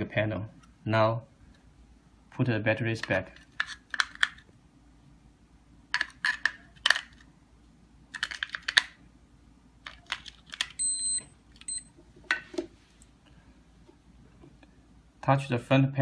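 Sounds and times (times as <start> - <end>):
batteries clicking and rattling: 3.0 - 4.5, 5.9 - 7.3, 8.1 - 9.0, 9.8 - 10.8.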